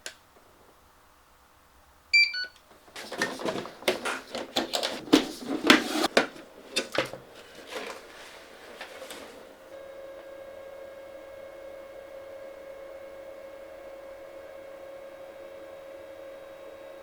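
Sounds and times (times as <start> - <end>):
electronic beeps: 2.2 - 2.6
plastic parts clicking and rattling: 2.9 - 8.1.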